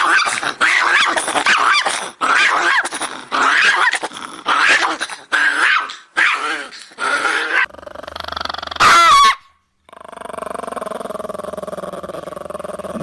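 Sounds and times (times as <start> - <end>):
dog barking fiercely: 4.6 - 6.6, 8.8 - 9.6.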